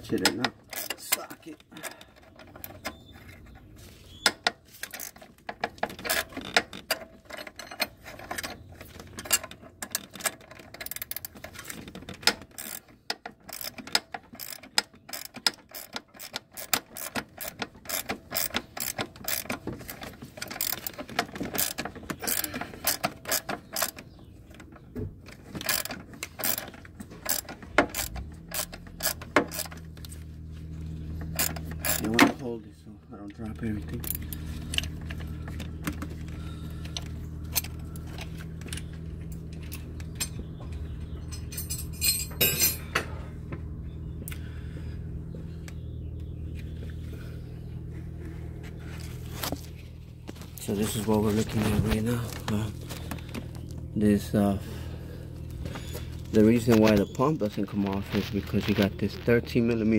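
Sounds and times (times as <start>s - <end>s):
hand ratchet clicking: 12.2s - 24.0s, 25.6s - 30.1s, 31.2s - 32.1s.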